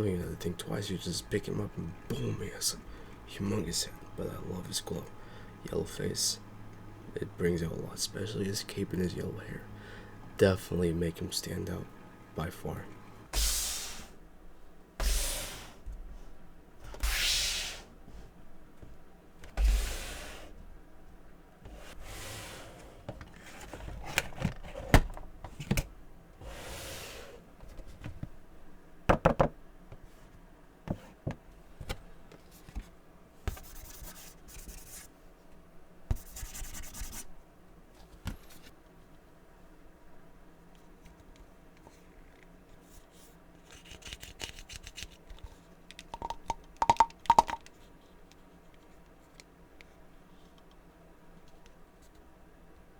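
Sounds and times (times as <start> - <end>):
sharp taps and knocks: 46.1 - 47.7.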